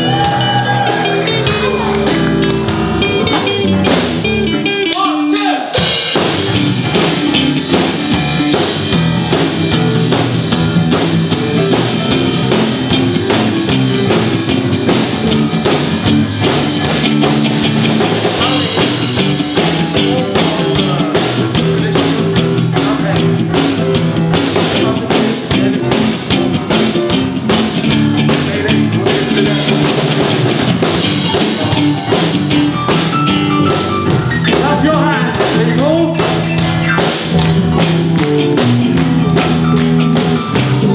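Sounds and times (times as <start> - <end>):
guitar solo: 0.0 - 21.1, 25.8 - 40.9
drum kit beat: 0.0 - 40.9
rock band playing: 0.0 - 40.9.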